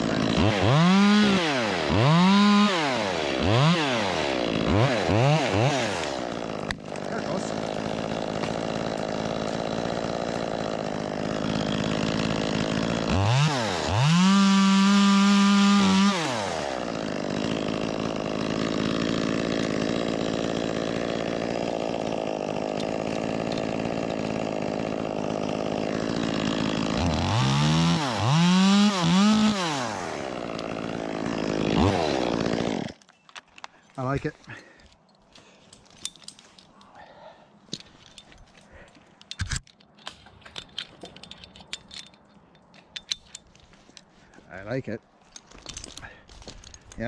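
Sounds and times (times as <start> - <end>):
chainsaw idling and revving: 0.0 - 33.0.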